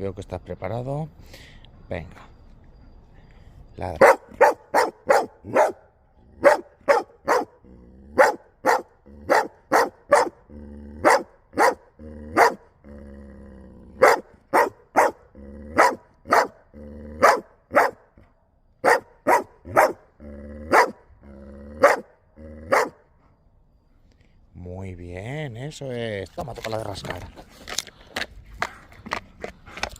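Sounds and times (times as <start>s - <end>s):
dog barking sharply: 4.0s - 7.6s, 8.2s - 10.4s, 11.0s - 11.8s, 12.4s - 12.6s, 14.0s - 15.2s, 15.8s - 16.6s, 17.2s - 18.0s, 18.8s - 20.0s, 20.7s - 21.0s, 21.8s - 22.1s, 22.7s - 23.0s.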